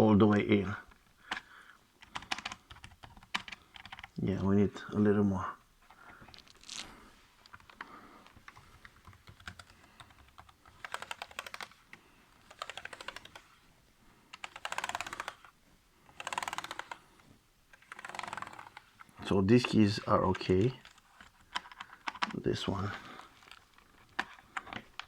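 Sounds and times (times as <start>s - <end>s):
laptop keyboard keys clicking: 1.3s - 4.2s, 7.5s - 13.5s, 14.3s - 15.5s, 16.1s - 17.0s, 17.8s - 18.9s, 20.8s - 22.4s.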